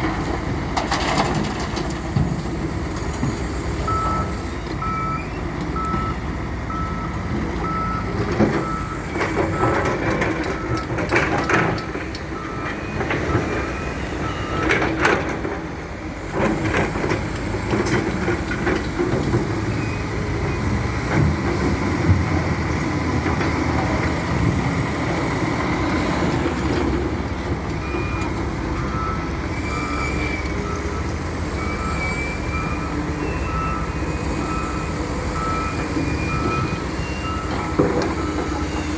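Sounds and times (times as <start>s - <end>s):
reversing alarm beeps: 3.3s - 11.0s, 11.8s - 15.0s, 19.7s - 20.8s, 27.8s - 38.9s.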